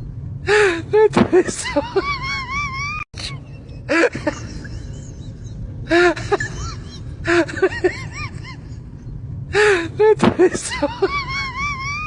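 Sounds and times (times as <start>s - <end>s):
low steady background: 0.0s - 12.0s.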